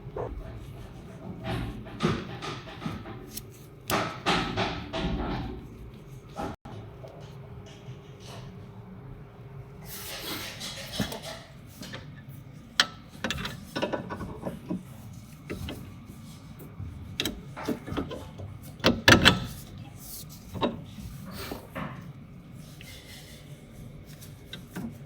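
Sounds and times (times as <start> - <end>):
tools and metal parts knocking: 1.1 - 5.7.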